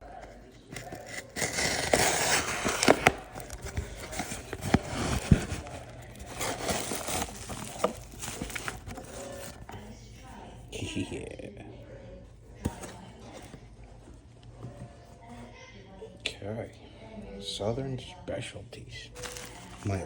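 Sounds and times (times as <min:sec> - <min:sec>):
packaging crinkling and tearing: 0:00.7 - 0:09.8, 0:19.1 - 0:20.0.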